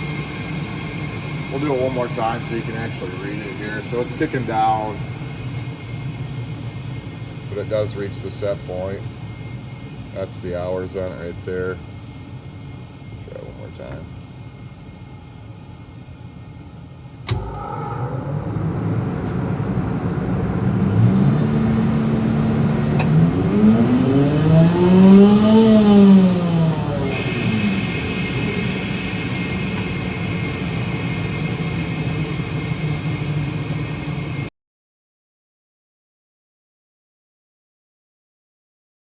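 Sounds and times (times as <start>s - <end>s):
air compressor motor whining: 0.0s - 15.2s, 17.1s - 34.5s
high hiss of air: 27.0s - 33.4s.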